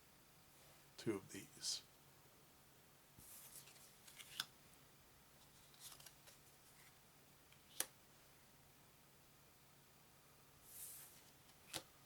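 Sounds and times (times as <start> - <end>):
cards rustling: 3.2 - 4.5, 5.4 - 7.0.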